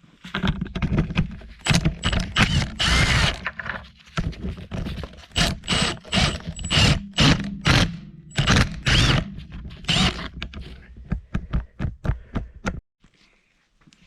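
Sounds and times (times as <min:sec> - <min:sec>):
metal clinks and scrapes: 0:00.2 - 0:07.2
impact driver bursts: 0:01.7 - 0:03.4, 0:05.4 - 0:10.3.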